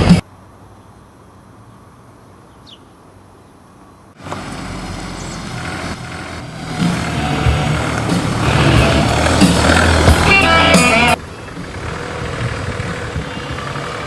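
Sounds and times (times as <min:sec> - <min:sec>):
motor vehicle running: 0:04.2 - 0:14.0.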